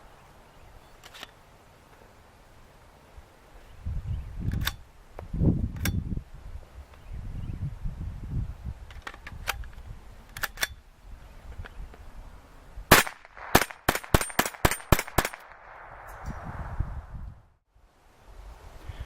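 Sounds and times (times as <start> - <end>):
rifle shots: 12.9 - 16.1.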